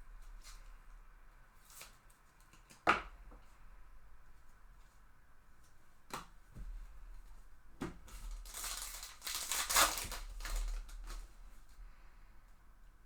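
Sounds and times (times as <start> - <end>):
foil wrapper crinkling: 8.1 - 11.3
foil wrapper ripping: 8.2 - 11.3.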